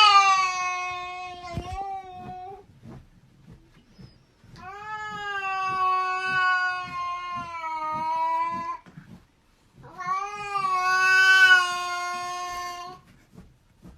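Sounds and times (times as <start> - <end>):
cat yowling: 4.6 - 8.8, 9.8 - 13.0.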